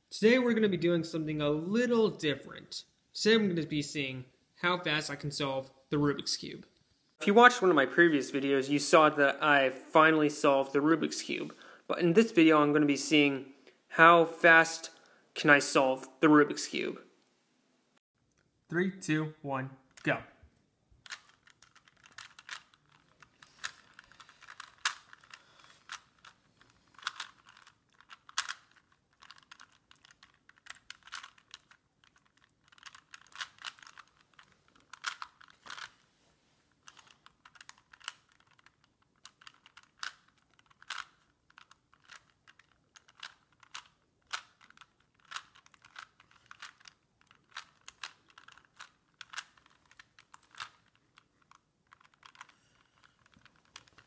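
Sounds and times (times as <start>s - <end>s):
puzzle cube plastic clicks: 21.0s - 36.0s, 36.8s - 54.0s.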